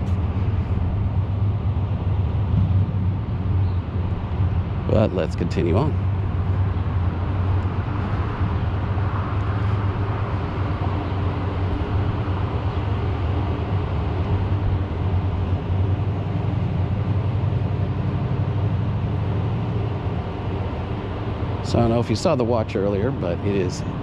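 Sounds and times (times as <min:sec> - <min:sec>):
broad street noise: 0:00.0 - 0:24.0
low mechanical hum: 0:00.0 - 0:24.0.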